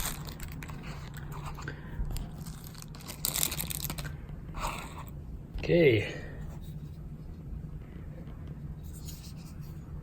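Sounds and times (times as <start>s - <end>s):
plastic bag crinkling: 0.0s - 1.6s, 2.2s - 4.2s.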